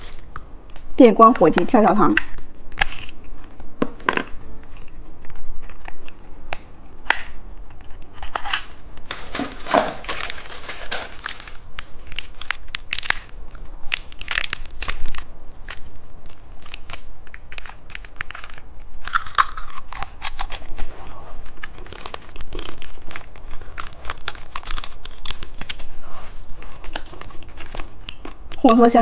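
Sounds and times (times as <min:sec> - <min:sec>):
plastic packaging crinkling: 0:07.2 - 0:28.8.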